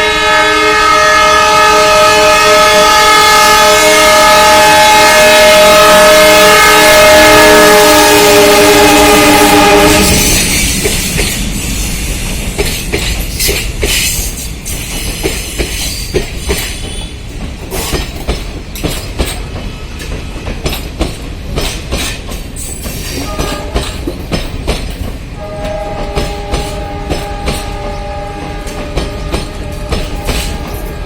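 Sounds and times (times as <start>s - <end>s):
held multi-note horn tone: 0.0s - 10.4s, 25.4s - 31.0s
train rumble: 0.0s - 31.0s
train wheels clattering over rail joints: 10.0s - 31.0s.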